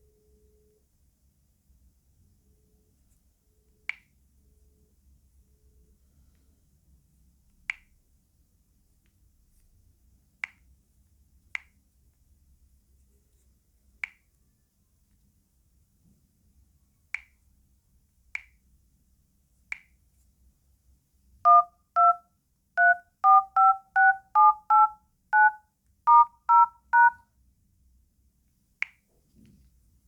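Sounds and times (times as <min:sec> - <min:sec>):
touch-tone dialing beeps: 0:21.5 - 0:22.2, 0:22.8 - 0:27.2.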